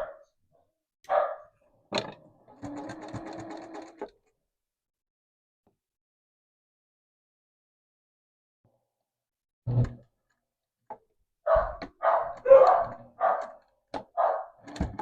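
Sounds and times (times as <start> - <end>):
dog barking: 0.0 - 0.3, 1.1 - 1.6, 11.5 - 14.6.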